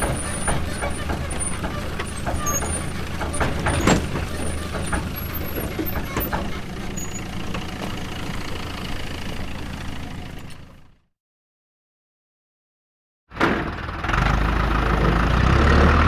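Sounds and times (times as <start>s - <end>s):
metal clanks and rattles: 0.0s - 9.6s
tractor engine droning: 0.0s - 11.0s.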